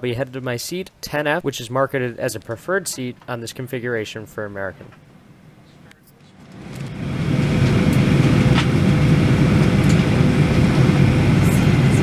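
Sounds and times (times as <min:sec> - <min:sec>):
airplane cabin noise: 0:04.2 - 0:12.0
thin steady whine: 0:04.3 - 0:12.0.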